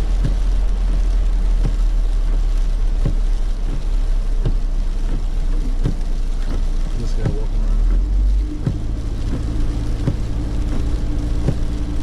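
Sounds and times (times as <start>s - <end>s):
truck rumble: 0.0s - 12.0s
soft thump: 4.4s - 7.4s, 8.6s - 9.4s.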